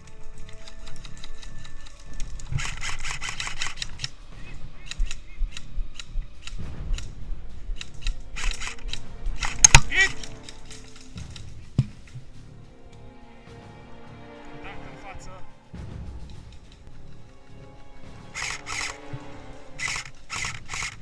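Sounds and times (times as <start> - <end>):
airsoft guns firing: 2.4 - 4.2, 4.8 - 11.4, 18.4 - 19.2, 19.8 - 21.0.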